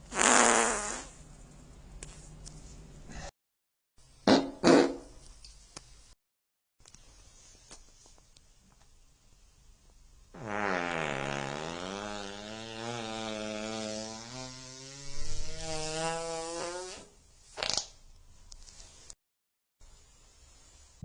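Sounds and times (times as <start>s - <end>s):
long drawn-out fart: 0.1s - 1.2s, 4.2s - 5.1s, 10.3s - 18.0s
short sharp fart blast: 0.1s - 1.2s, 4.2s - 5.1s, 10.4s - 17.9s.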